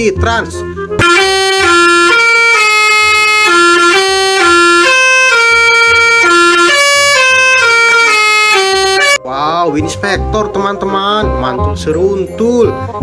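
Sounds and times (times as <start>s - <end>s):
bus horn playing a tune: 0.8s - 9.2s.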